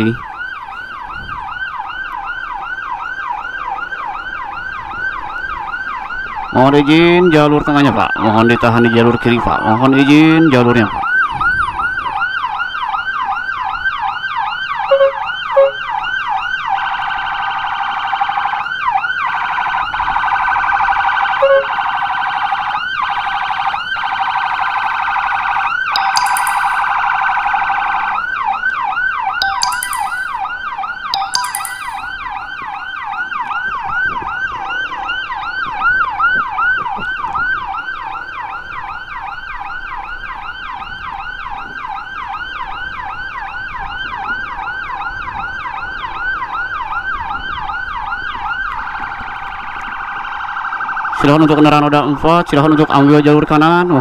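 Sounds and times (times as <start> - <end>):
electronic siren yelping: 14.7 - 15.9, 20.3 - 22.2
sharp horn blasts: 14.9 - 15.8, 21.4 - 21.7.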